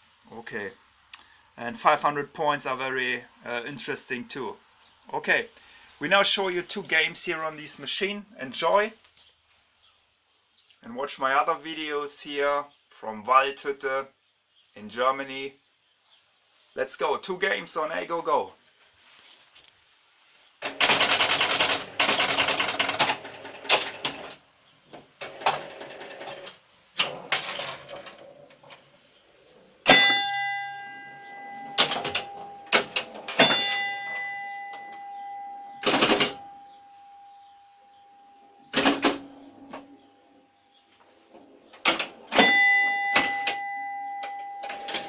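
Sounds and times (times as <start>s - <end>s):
pinball clicks and knocks: 25.2s - 28.8s, 29.8s - 35.1s, 35.7s - 36.5s, 38.7s - 40.0s, 41.8s - 45.0s
long ringing bell note: 29.9s - 40.2s, 42.4s - 45.0s.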